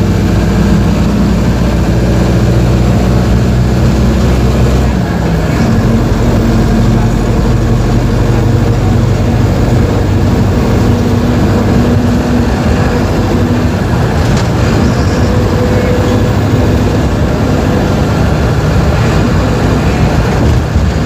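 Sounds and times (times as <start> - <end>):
diesel bus engine humming: 0.0 - 21.0.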